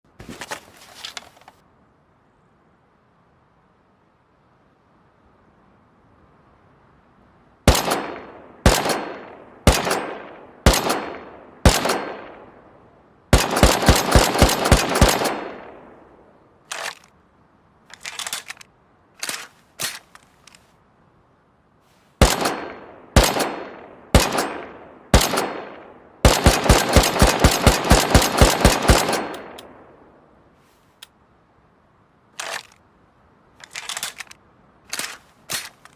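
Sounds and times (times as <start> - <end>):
rifle gunshots with ringing tail: 7.7 - 12.7, 13.3 - 16.1, 22.2 - 30.1
clicks and rattles: 17.9 - 20.6, 33.6 - 35.9.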